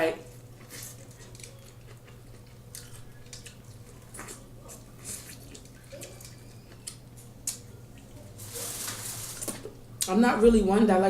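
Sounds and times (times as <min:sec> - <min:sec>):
wet eating clicks and smacks: 0:05.2 - 0:08.1.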